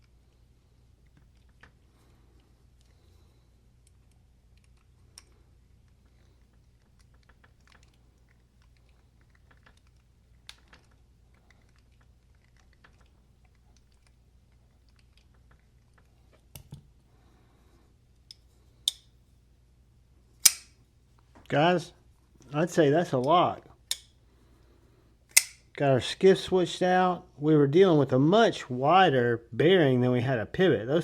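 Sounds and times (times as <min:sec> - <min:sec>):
knife clicking: 0:20.4 - 0:20.8, 0:25.3 - 0:25.7.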